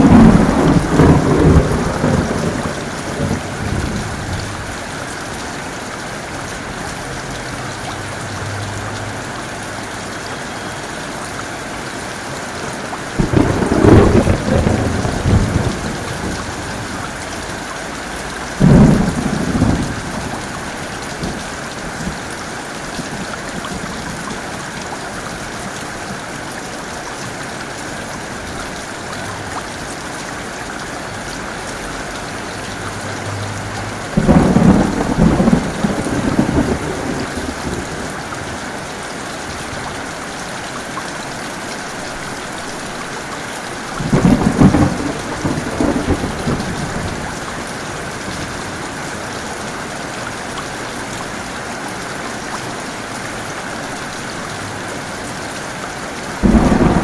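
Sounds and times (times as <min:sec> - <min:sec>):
thunderclaps: 0:00.0 - 0:04.8, 0:13.2 - 0:17.2, 0:18.6 - 0:22.2, 0:33.8 - 0:38.4, 0:44.0 - 0:48.9, 0:56.4 - 0:57.0
heavy rain: 0:00.0 - 0:57.0.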